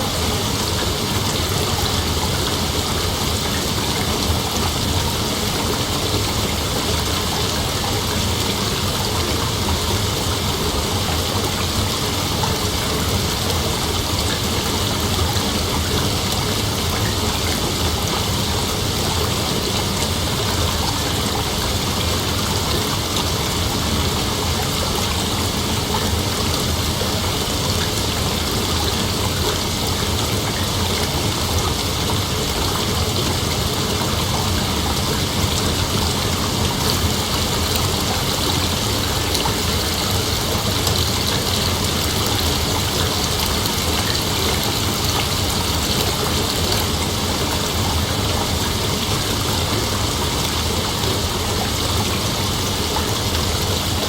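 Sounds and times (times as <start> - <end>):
rain falling steadily: 0.0 - 54.0.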